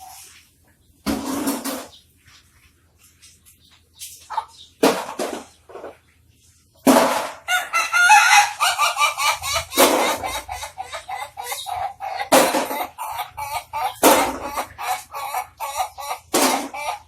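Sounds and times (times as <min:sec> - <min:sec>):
rooster crowing with rapid chattering: 0:07.3 - 0:17.0.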